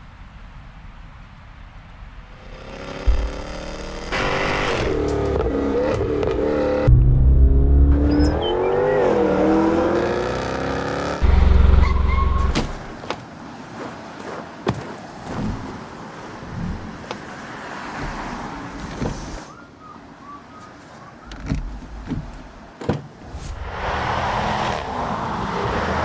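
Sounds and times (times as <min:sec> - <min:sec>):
heavy low booms: 0:06.9 - 0:08.0, 0:23.2 - 0:24.4.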